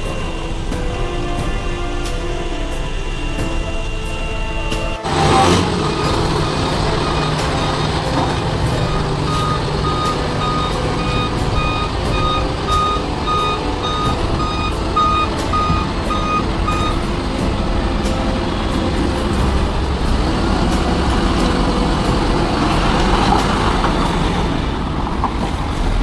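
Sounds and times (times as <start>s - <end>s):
engine rumble: 0.0s - 26.0s
truck reversing alarm beeping: 0.0s - 26.0s.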